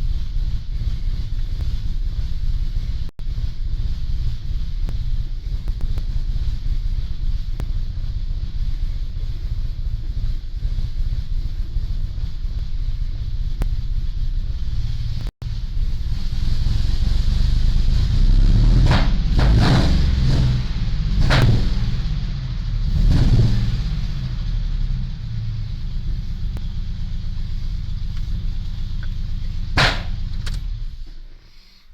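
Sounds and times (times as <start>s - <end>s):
car engine running roughly: 0.0s - 31.6s
backfire pops: 18.8s - 20.6s, 21.2s - 22.2s, 29.8s - 30.7s.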